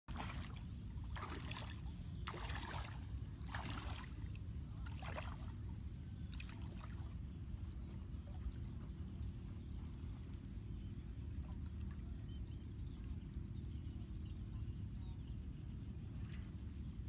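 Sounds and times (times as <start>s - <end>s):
water splashing in strokes: 0.1s - 5.5s.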